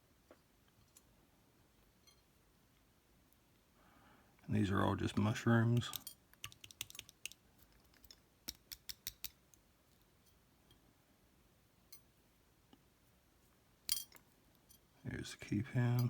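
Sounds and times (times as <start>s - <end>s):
metal clicks of lock pins: 13.9s - 14.2s.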